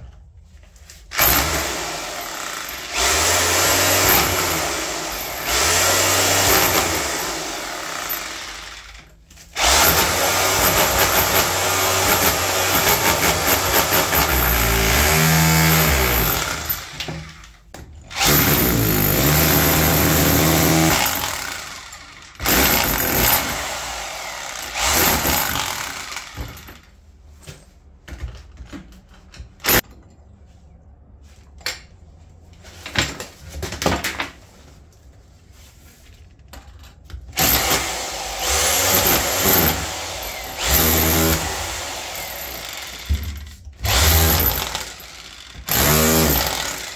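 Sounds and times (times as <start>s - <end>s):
handheld power tool running: 1.1s - 26.9s, 37.4s - 46.9s.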